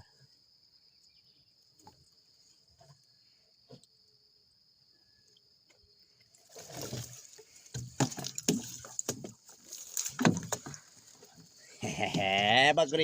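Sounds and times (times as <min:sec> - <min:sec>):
high insect trill: 0:00.0 - 0:13.0
water splashing and sloshing: 0:05.3 - 0:12.6
knocks against a boat: 0:07.7 - 0:09.4, 0:10.1 - 0:10.8.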